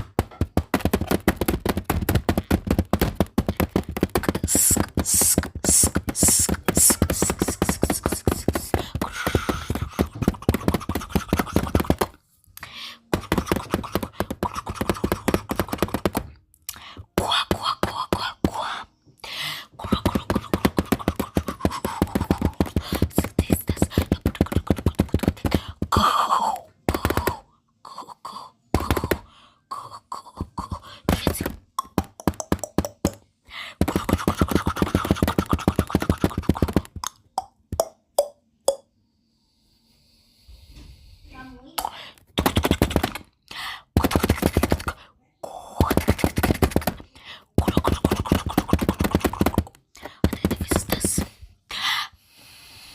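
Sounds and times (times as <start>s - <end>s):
fingertip tapping on camera: 0.0s - 12.2s, 13.1s - 16.4s, 19.7s - 26.1s, 26.8s - 27.4s, 28.7s - 29.3s, 30.4s - 37.9s, 42.4s - 43.3s, 44.0s - 45.0s, 45.8s - 51.3s.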